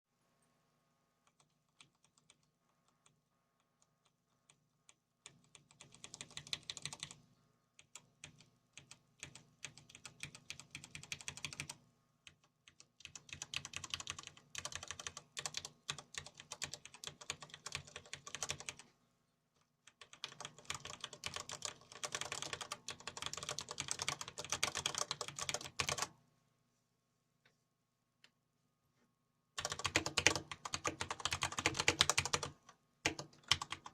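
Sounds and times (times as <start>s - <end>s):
mechanical keyboard typing: 1.3s - 3.2s, 4.0s - 7.2s, 7.8s - 18.8s, 19.9s - 26.1s, 29.6s - 33.9s.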